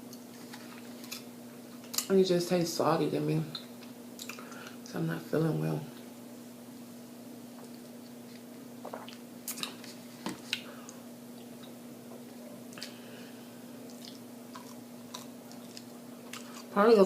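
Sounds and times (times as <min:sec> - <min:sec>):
person chewing food: 0:13.8 - 0:16.7.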